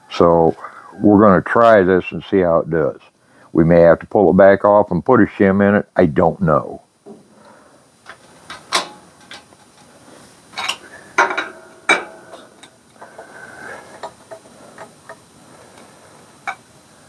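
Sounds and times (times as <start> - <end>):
metal parts clanking: 8.1 - 9.9, 10.6 - 15.2
metal scraping: 10.6 - 15.0.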